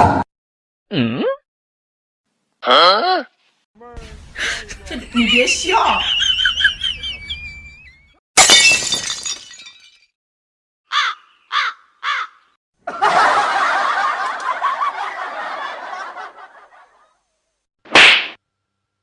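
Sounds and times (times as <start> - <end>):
canned audience laughter: 6.0 - 7.9, 12.8 - 17.2.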